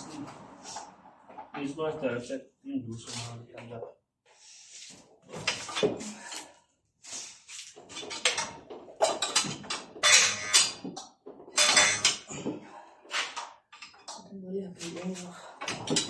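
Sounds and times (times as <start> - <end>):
metal tools clinking: 7.9 - 11.0, 11.6 - 12.5.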